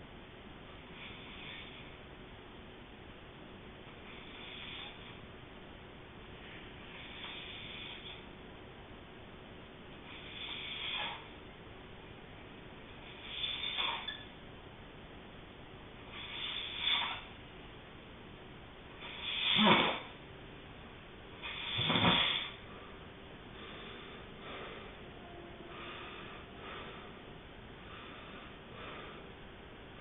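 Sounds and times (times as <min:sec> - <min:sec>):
person snoring: 0:19.0 - 0:20.1, 0:21.4 - 0:22.6.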